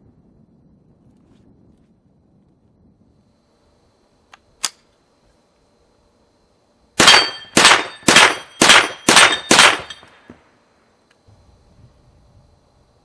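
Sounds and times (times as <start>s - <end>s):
rifle shots with metallic ringing: 7.0s - 10.3s.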